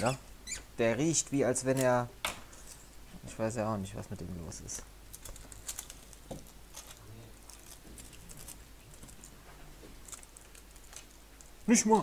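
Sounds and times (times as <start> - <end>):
small objects clicking and rustling: 5.1 - 11.6.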